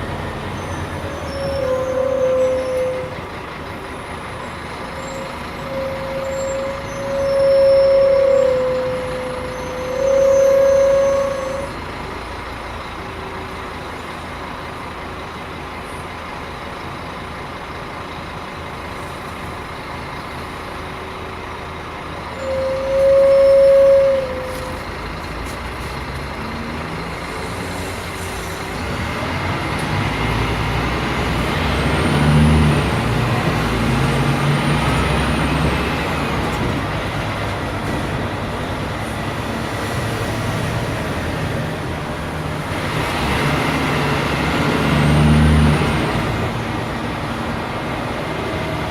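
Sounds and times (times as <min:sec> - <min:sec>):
bus accelerating away: 0:00.0 - 0:48.9
bus engine idling: 0:00.0 - 0:48.9.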